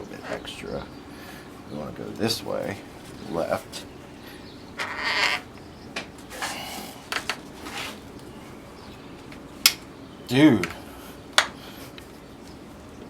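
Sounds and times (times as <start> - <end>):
oil filter straining and scraping: 4.7 - 5.6.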